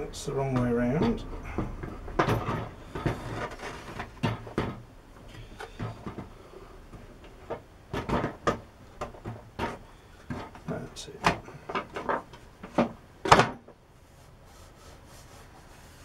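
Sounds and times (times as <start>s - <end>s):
workpiece scraping: 0.6s - 4.8s, 13.9s - 16.0s.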